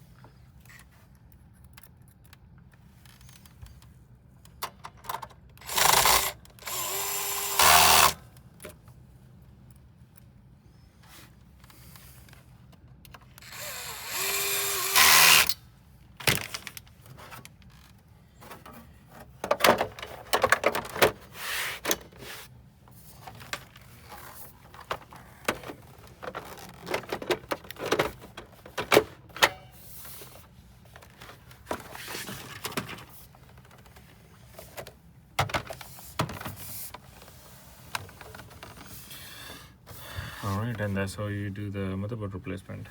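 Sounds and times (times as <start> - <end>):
electric screwdriver whining: 5.6 - 8.2, 13.4 - 15.6.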